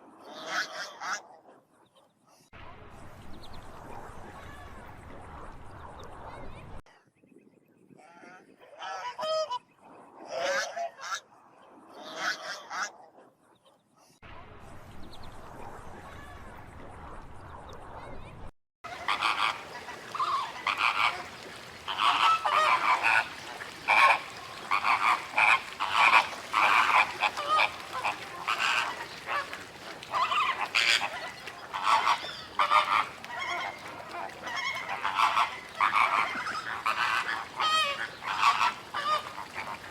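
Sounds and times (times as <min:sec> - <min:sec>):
flamingos honking: 0:18.9 - 0:39.9.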